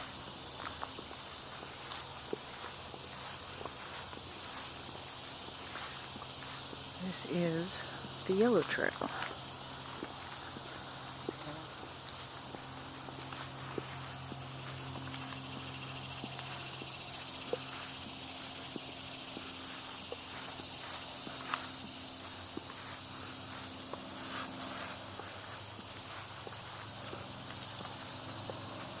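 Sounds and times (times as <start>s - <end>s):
faint footsteps: 0.0s - 29.0s
insect chorus: 0.0s - 29.0s.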